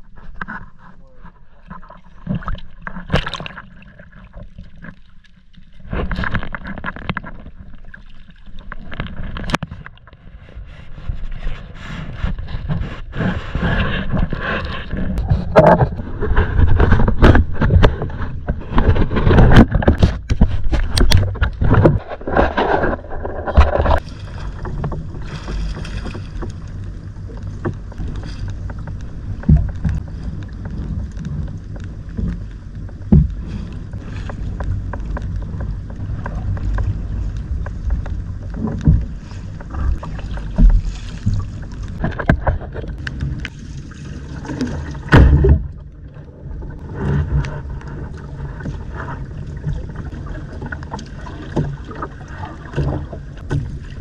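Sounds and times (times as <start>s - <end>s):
water noise: 0.0s - 54.0s
wind: 0.0s - 54.0s
boat motor humming: 22.9s - 54.0s
knocks and thumps: 30.7s - 37.0s, 45.1s - 45.8s.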